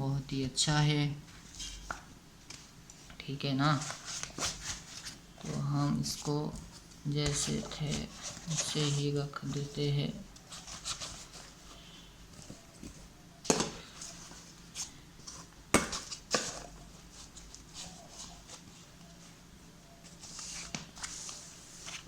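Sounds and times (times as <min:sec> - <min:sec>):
rustling: 0:01.2 - 0:22.0.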